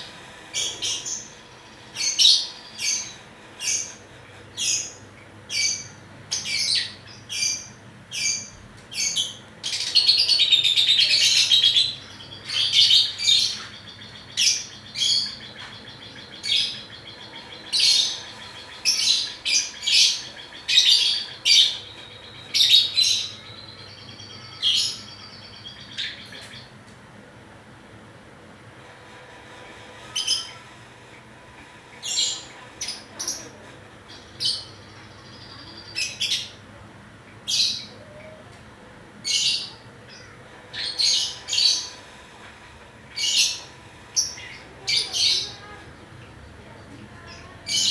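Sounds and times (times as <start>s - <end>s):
bird chirping: 0.0s - 26.8s.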